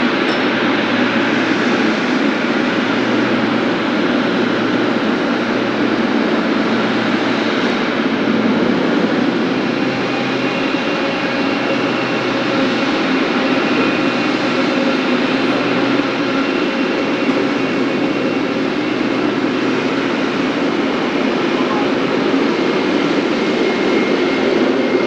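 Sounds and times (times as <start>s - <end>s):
jet engines running: 0.0s - 25.0s.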